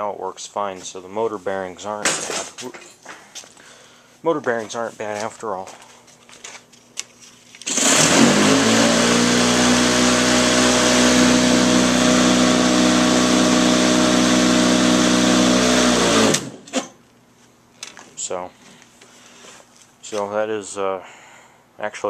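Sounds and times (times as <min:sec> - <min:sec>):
electric lawn mower humming: 0:07.7 - 0:16.7.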